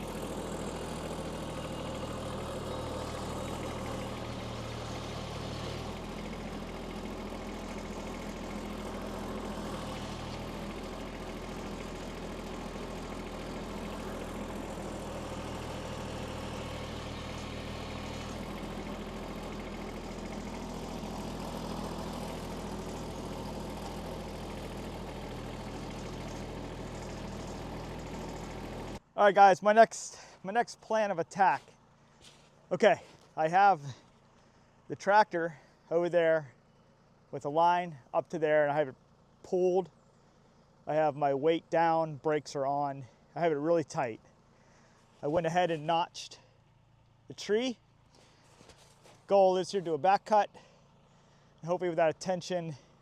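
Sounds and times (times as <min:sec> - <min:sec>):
diesel tractor engine idling: 0:00.0 - 0:53.0.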